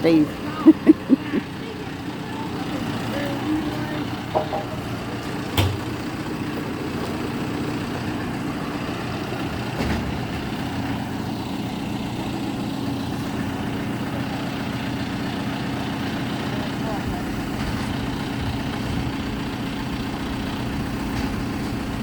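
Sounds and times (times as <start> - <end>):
diesel engine running: 0.0 - 22.0
knock: 4.3 - 4.8.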